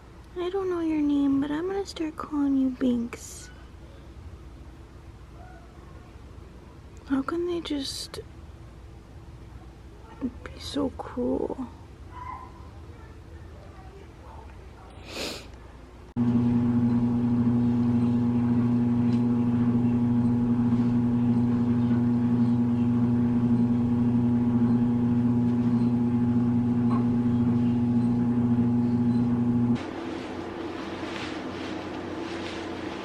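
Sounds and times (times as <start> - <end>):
loud steady mechanical hum: 16.2 - 33.0.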